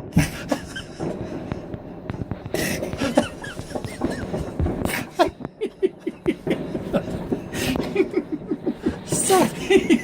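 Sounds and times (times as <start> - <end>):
fireworks popping and crackling: 0.0 - 10.0
stifled laughter: 2.6 - 10.0.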